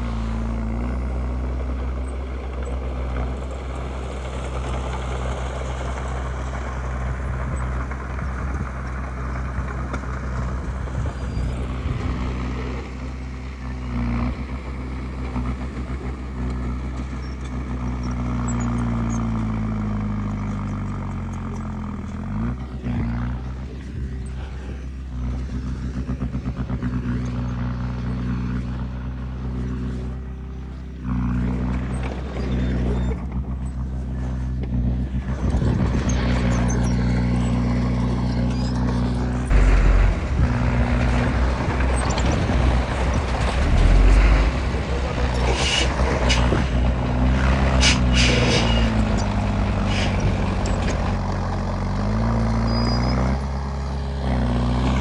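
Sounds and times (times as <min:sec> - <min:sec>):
diesel engine running hard: 0:00.0 - 0:55.0
sharp high clanks and squeaks: 0:17.0 - 0:19.6, 0:31.4 - 0:44.6, 0:45.3 - 0:51.3, 0:52.6 - 0:53.4.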